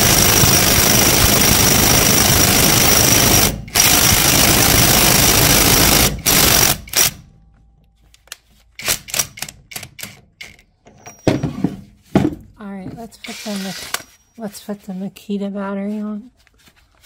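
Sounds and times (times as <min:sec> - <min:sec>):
impact wrench hammering: 0:00.0 - 0:07.2.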